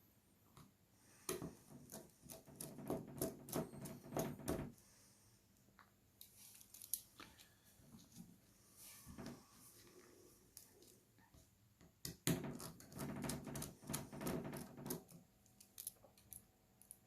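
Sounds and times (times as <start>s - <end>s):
screwdriver and tiny screws clicking: 14.9s - 17.0s.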